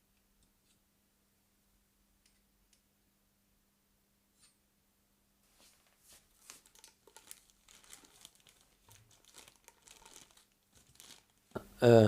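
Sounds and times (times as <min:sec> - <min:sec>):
crinkling: 0:05.5 - 0:11.7.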